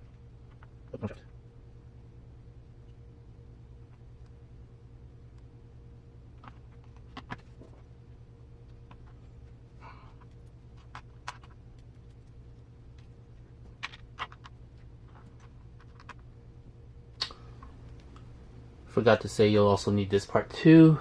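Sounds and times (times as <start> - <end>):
steady low hum: 0.0 - 21.0
small plastic parts clicking: 13.7 - 16.3.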